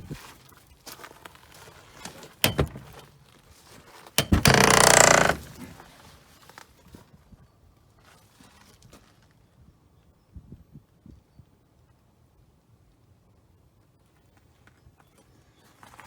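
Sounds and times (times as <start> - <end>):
sharp knocks: 2.4 - 3.0, 4.2 - 5.5
loud rasping scrape: 4.2 - 5.6.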